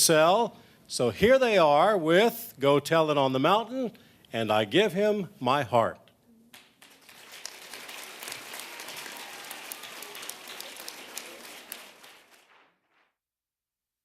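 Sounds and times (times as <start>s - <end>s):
audience applauding: 6.5s - 13.1s.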